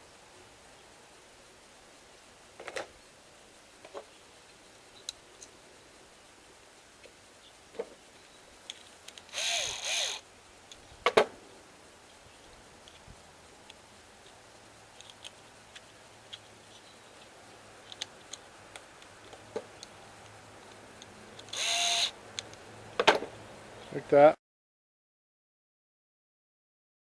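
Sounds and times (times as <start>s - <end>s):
light clicks and taps of tools: 12.1s - 21.6s, 22.3s - 23.1s.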